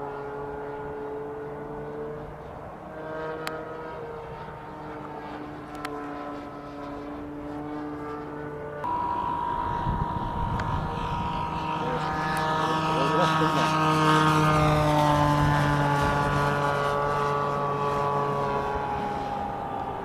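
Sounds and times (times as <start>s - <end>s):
model airplane motor and propeller: 7.0s - 20.0s.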